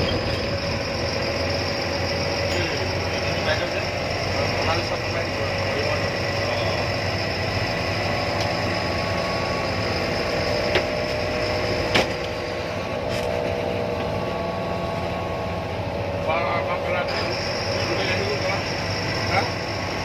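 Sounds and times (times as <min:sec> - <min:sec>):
bus engine humming: 0:00.0 - 0:20.0.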